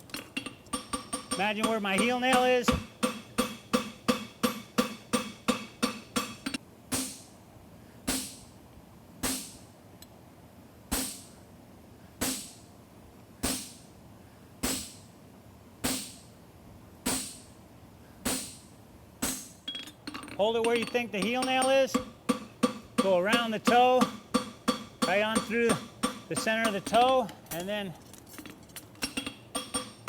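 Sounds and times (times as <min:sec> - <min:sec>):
hammer striking horseshoe on anvil: 0:00.4 - 0:07.2, 0:19.2 - 0:27.8, 0:29.0 - 0:30.0.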